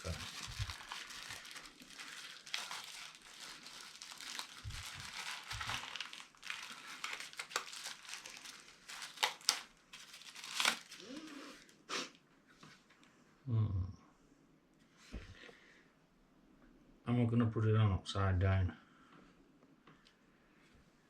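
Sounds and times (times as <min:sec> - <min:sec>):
plastic packaging crinkling: 0:00.0 - 0:11.8.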